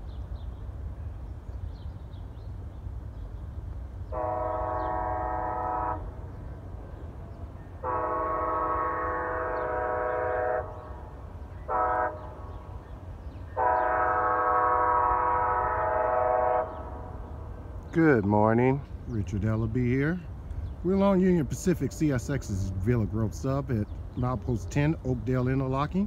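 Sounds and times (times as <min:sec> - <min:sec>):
locomotive horn blasts: 0:04.1 - 0:17.6.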